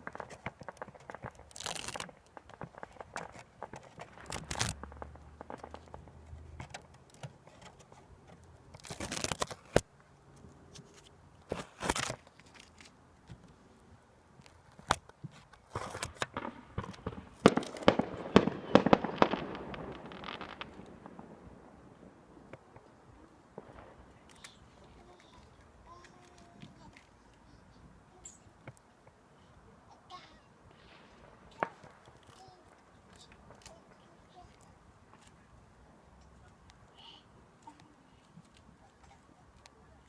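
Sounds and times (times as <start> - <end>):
fireworks popping and crackling: 0.0 - 9.9, 11.5 - 12.8, 14.4 - 27.2, 30.1 - 35.5.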